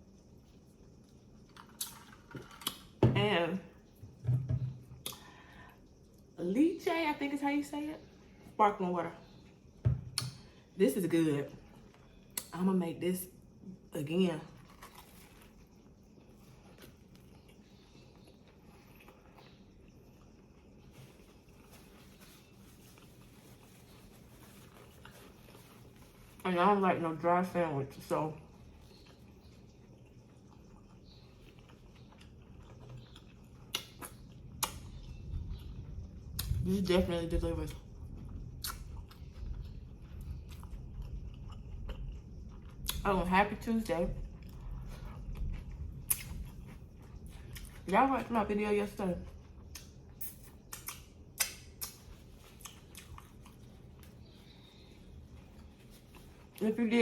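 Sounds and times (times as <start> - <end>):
chewing sandwich: 14.5 - 26.4, 28.4 - 36.6, 37.7 - 43.0, 44.2 - 47.9, 49.2 - 56.6
crisp crunches and clicks: 14.6 - 19.6, 49.7 - 56.6.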